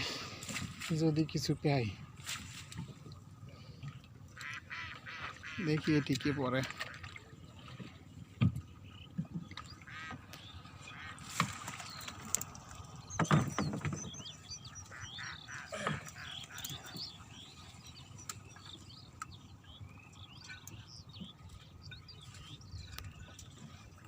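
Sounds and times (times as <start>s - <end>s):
birds chirping: 3.5s - 24.0s
knocks or splashes in water: 11.2s - 12.5s, 13.1s - 14.3s.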